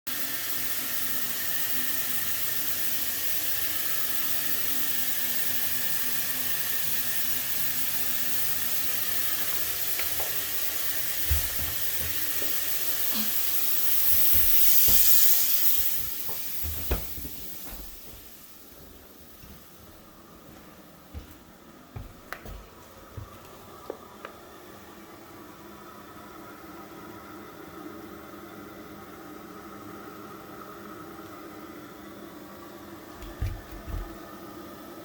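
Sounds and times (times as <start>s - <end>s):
tap water running into sink: 8.0s - 19.7s, 33.2s - 34.3s.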